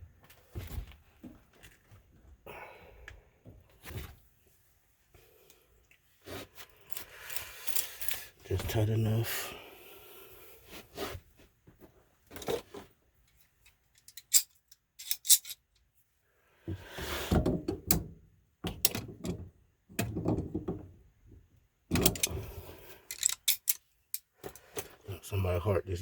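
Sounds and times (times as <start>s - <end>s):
scraping and rubbing handling noise: 6.0s - 9.2s, 10.6s - 15.7s, 22.0s - 25.1s.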